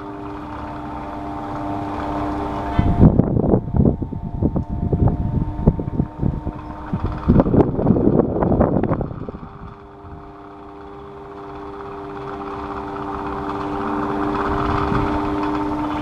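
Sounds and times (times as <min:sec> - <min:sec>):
air hissing from fan: 0:00.0 - 0:16.0
electric fan motor hum: 0:00.0 - 0:16.0
irregular knocks clattering: 0:06.0 - 0:16.0.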